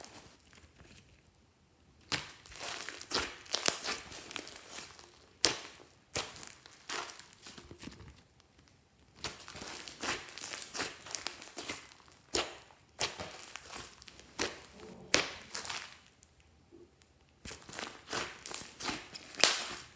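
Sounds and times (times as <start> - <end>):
slime wet crackling: 2.0 - 7.8, 9.1 - 19.9
slime sharp pops: 17.5 - 19.9.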